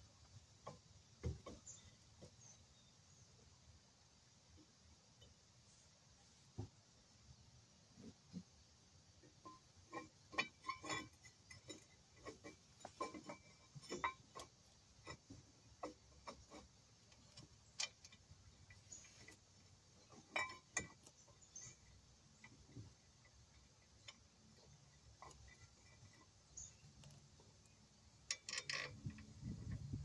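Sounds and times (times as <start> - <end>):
hand tools clinking against metal: 9.4 - 26.7.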